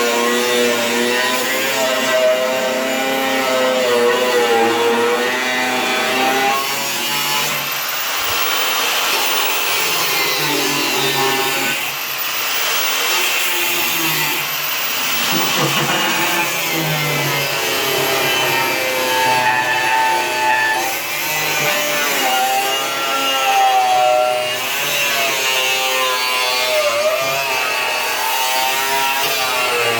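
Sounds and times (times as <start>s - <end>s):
angle grinder on steel: 0.0s - 29.9s.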